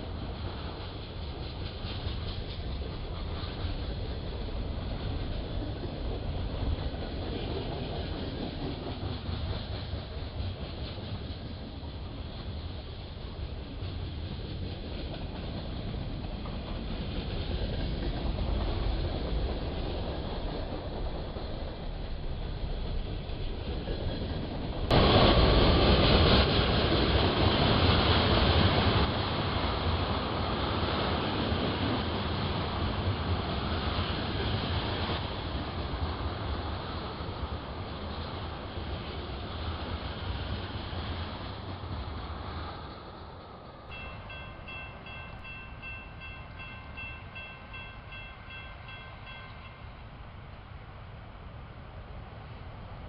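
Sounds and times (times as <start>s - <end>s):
passing train rumble: 0.0s - 53.0s
crossing warning bell ringing: 43.9s - 50.0s.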